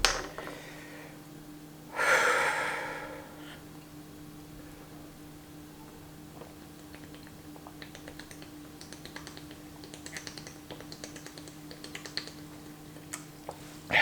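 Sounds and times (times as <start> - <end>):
person drinking water clicks: 6.3 - 13.9.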